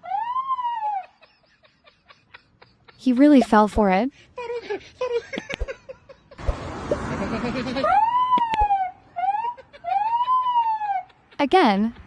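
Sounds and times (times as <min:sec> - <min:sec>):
boy imitating police siren: 0:00.0 - 0:01.2, 0:07.8 - 0:11.2.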